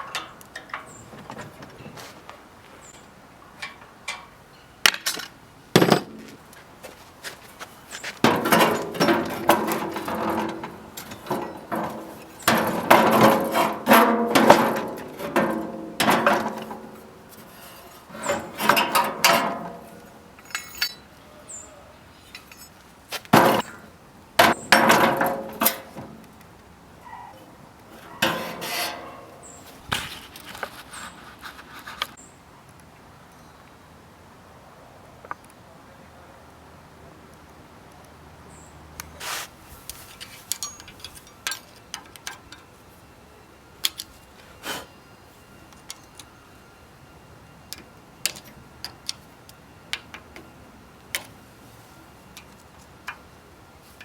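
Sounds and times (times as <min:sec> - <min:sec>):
tool parts knocking and scraping: 0:00.0 - 0:21.1, 0:22.2 - 0:26.6, 0:27.4 - 0:32.2, 0:39.8 - 0:42.7, 0:51.1 - 0:54.0.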